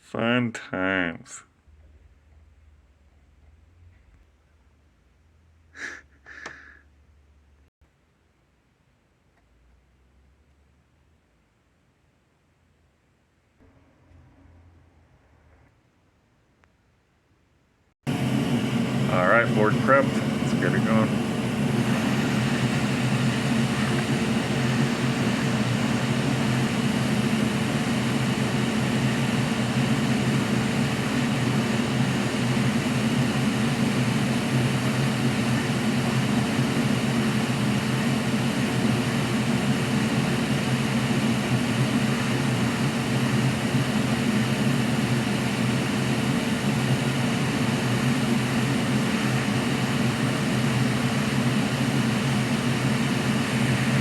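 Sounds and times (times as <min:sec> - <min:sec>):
electric blower fan running: 0:18.1 - 0:54.0.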